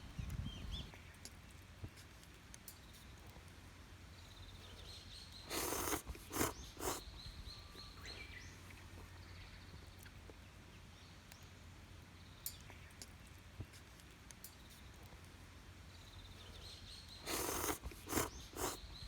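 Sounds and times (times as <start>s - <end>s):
birds calling: 4.5s - 9.8s, 16.1s - 19.0s.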